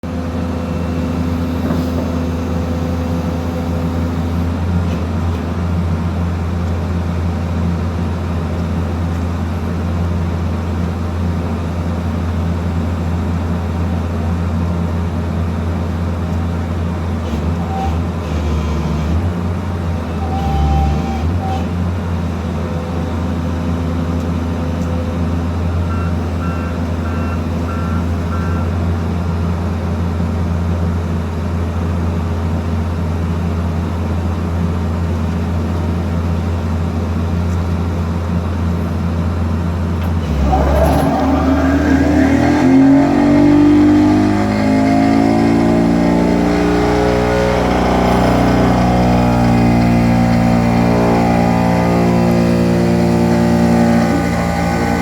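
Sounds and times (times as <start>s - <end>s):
excavator engine running: 0.0s - 55.0s
short high beeps: 25.8s - 28.8s.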